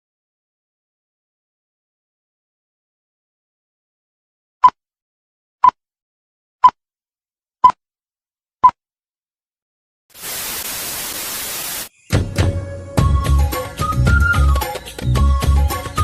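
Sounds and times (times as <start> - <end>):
static hiss: 10.1 - 12.1
music: 12.0 - 16.0.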